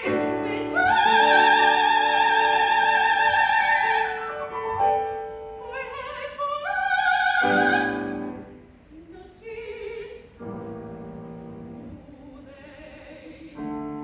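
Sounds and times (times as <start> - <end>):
soprano singing with vibrato: 0.0 - 4.6, 5.5 - 10.6, 11.8 - 14.0
piano accompaniment: 0.0 - 8.8, 10.4 - 12.1.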